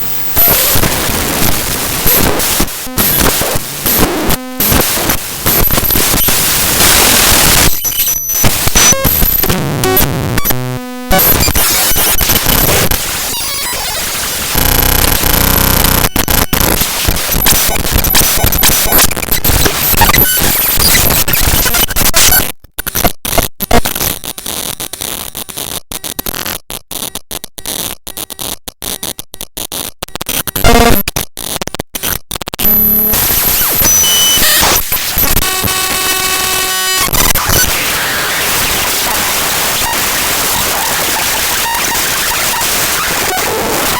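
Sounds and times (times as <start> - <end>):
harsh digital noise and static: 0.0 - 43.9
crackling: 0.3 - 43.9
buzzing tone: 2.0 - 22.4, 30.5 - 31.0, 32.6 - 37.7.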